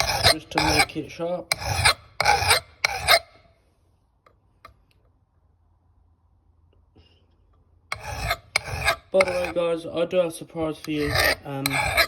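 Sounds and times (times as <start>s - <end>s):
file rasping on axe head: 0.0s - 3.4s, 7.9s - 9.8s, 10.8s - 12.0s.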